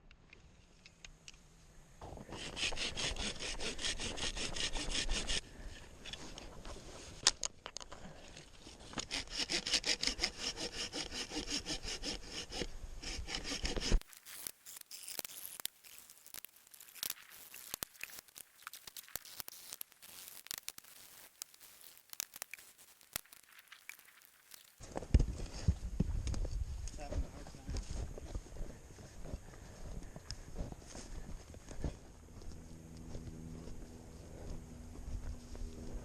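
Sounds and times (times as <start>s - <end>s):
hand saw cutting wood: 2.2s - 5.4s, 8.8s - 15.6s.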